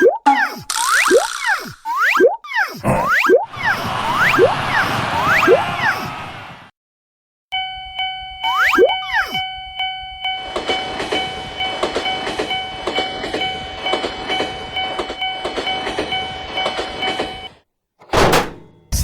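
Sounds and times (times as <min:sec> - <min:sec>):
railroad crossing bell ringing: 0:07.6 - 0:17.5
train wheels clacking on rails: 0:10.2 - 0:17.5.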